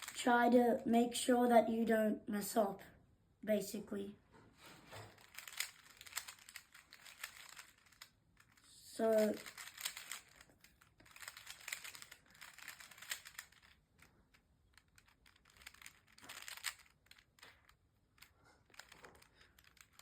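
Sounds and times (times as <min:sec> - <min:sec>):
plastic puzzle cube clicking: 0:00.0 - 0:00.2, 0:05.2 - 0:20.0.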